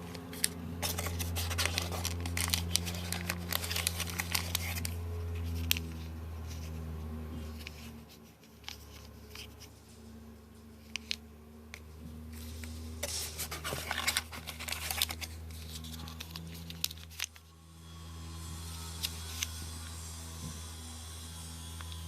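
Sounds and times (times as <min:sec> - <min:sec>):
packaging rustling and clicking: 0:00.0 - 0:06.7, 0:12.4 - 0:17.4
low electrical hum: 0:00.0 - 0:22.0.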